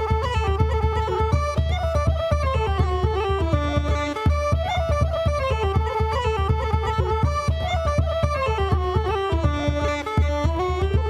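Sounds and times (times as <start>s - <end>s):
pipe melody: 0.0s - 11.0s.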